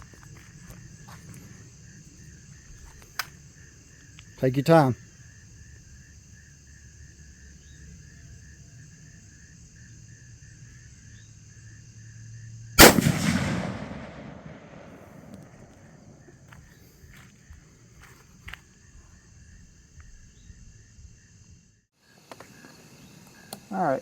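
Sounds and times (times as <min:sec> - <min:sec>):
crickets chirping: 0:00.0 - 0:24.0
rifle shot with echo: 0:12.8 - 0:16.0.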